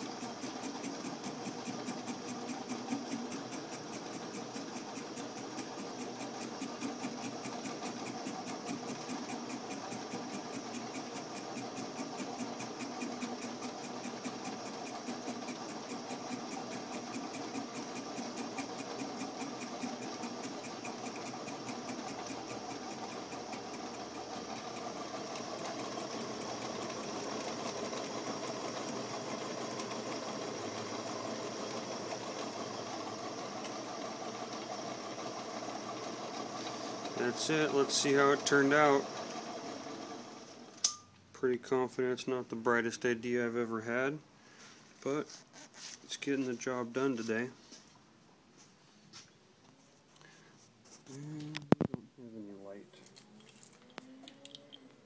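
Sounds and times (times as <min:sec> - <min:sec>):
lathe motor and gears humming: 0:00.0 - 0:41.0
fly cutter ticking on steel: 0:00.2 - 0:24.8.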